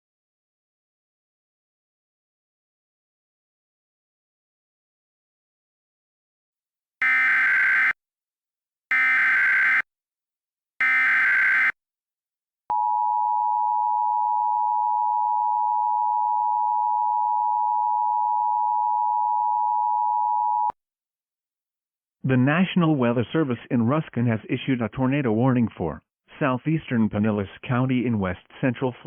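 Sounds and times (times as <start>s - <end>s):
steady two-tone attention signal: 7.0s - 7.9s, 10.8s - 11.7s
screeching data tones: 7.0s - 8.0s, 8.9s - 9.8s, 10.8s - 11.8s.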